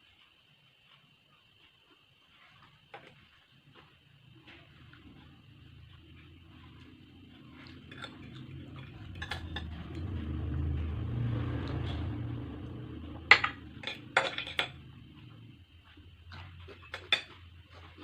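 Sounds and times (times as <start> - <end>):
low rumble: 4.2 - 18.0
utensils clinking on a plate: 7.6 - 10.0, 13.3 - 15.0, 16.4 - 18.0.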